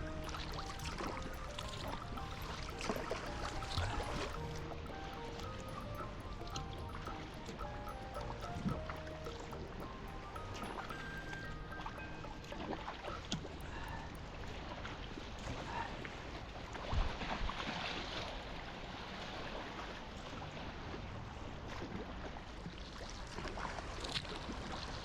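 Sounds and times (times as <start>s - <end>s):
water lapping around a kayak: 0.0s - 9.9s.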